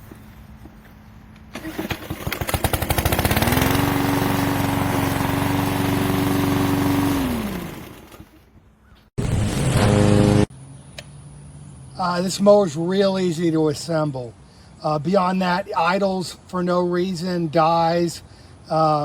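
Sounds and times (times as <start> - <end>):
mower engine running and stalling: 1.5 - 8.5, 9.2 - 10.5
loud steady running sound: 2.6 - 8.4, 9.2 - 10.5.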